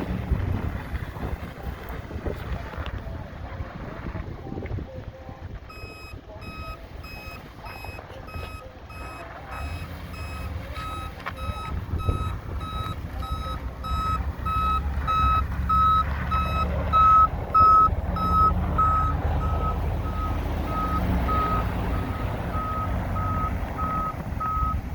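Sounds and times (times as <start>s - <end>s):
vehicle engine running: 0.0s - 24.9s
truck backup alarm beeping: 5.6s - 24.9s.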